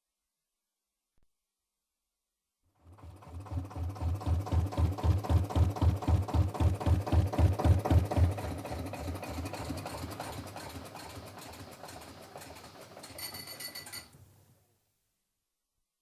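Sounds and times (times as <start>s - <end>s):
boat engine thumping: 4.0s - 10.4s.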